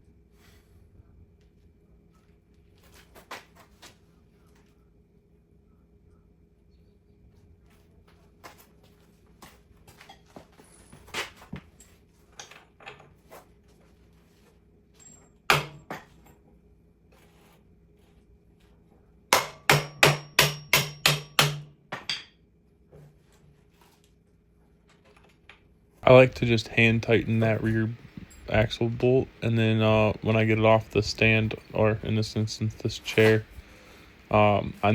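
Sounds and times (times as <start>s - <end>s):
hammer striking axle bolt: 19.4s - 22.3s.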